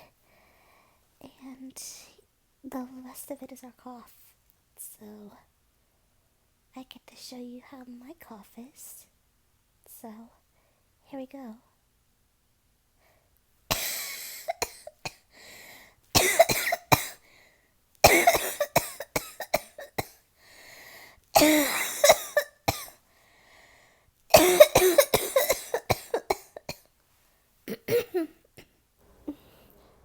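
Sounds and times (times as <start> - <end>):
woman coughing: 13.7 - 15.2, 16.2 - 17.2, 18.0 - 20.2, 21.4 - 23.0, 24.3 - 26.9, 27.7 - 29.7
short breaths drawn in: 15.3 - 16.0, 20.4 - 21.2, 23.1 - 24.1.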